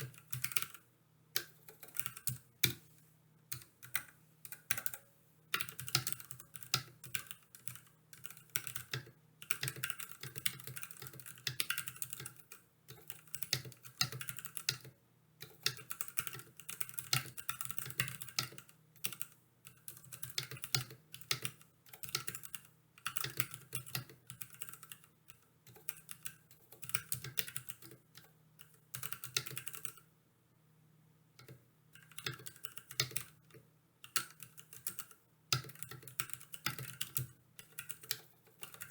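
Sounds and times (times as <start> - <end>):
typing on mechanical keyboard: 0.0 - 0.8, 1.4 - 2.8, 3.5 - 30.0, 31.4 - 38.9.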